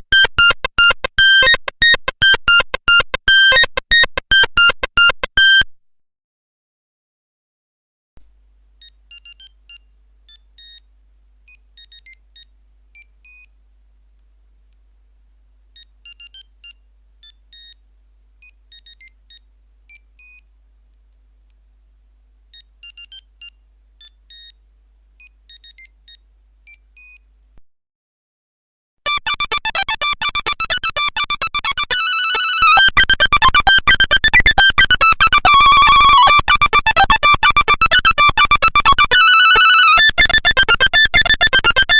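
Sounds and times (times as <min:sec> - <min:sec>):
beeping phone ringtone: 0:00.0 - 0:05.7, 0:29.1 - 0:41.9
fast dense run of beeps: 0:00.0 - 0:05.7, 0:29.1 - 0:41.9.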